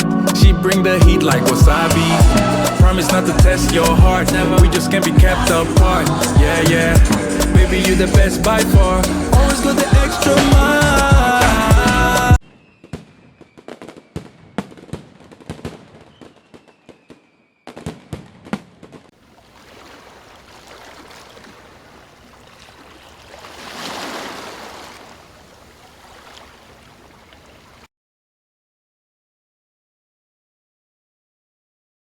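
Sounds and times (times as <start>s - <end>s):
faint falling whistle: 12.4s - 14.7s, 16.0s - 17.8s
fireworks popping and banging: 12.5s - 19.1s.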